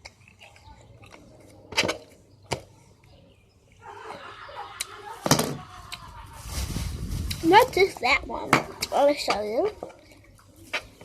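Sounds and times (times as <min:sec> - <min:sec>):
soft rustling handling noise: 0:06.0 - 0:11.0.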